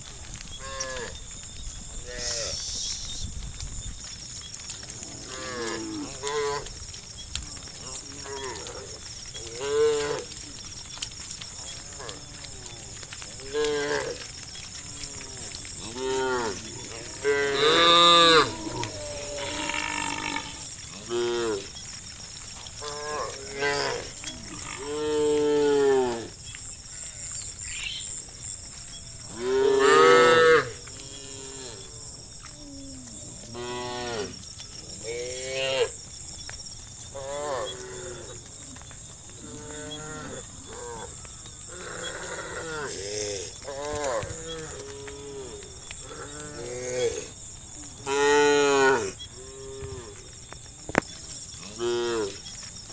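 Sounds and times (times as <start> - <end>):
high-pitched hiss: 2.0 - 3.5, 22.8 - 32.0
cows mooing: 15.0 - 21.7, 29.2 - 31.9.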